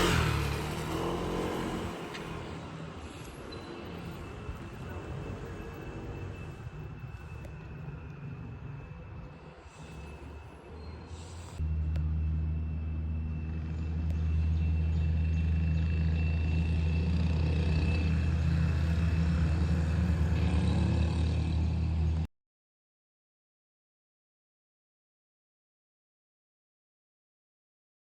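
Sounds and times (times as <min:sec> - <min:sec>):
vehicle engine rumble: 0:00.0 - 0:22.3
faint high whine: 0:02.4 - 0:17.1.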